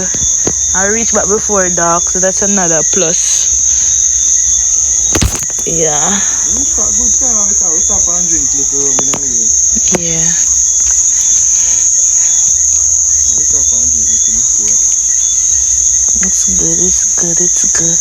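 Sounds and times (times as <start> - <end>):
crickets trilling: 0.0 - 18.0
quiet voices talking: 16.2 - 18.0.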